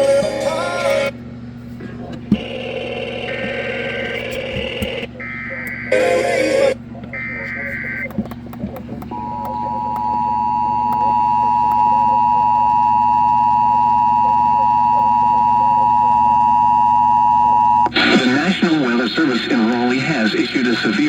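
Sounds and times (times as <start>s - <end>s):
two-tone alert alarm: 4.6s - 8.1s, 9.1s - 17.9s.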